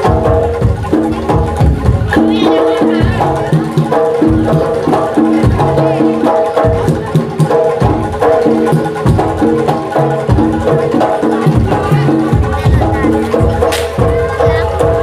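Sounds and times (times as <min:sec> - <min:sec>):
deep drum beats: 0:00.0 - 0:15.0
pitched percussion notes: 0:00.0 - 0:15.0.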